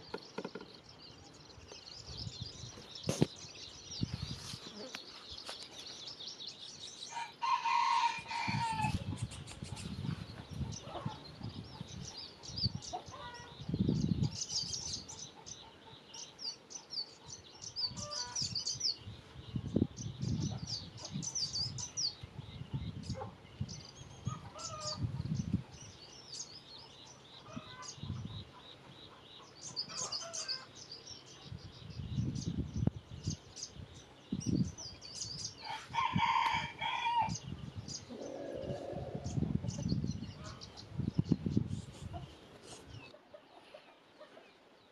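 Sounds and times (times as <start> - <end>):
small birds chirping: 0.0 - 44.9
rooster crowing: 7.1 - 9.0, 35.6 - 37.4.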